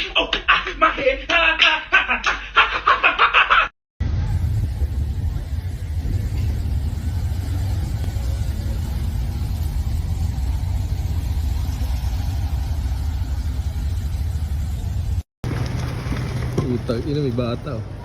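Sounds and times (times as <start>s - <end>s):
steady low rumble: 4.0s - 18.0s.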